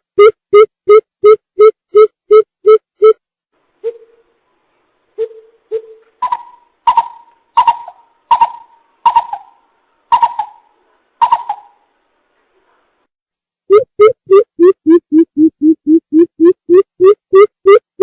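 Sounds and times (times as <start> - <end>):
coucal calling: 5.2 - 11.9.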